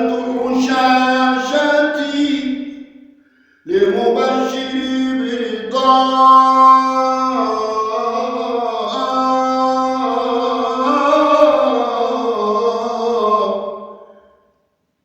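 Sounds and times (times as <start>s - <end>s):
man chanting: 0.0s - 3.0s, 3.7s - 14.3s.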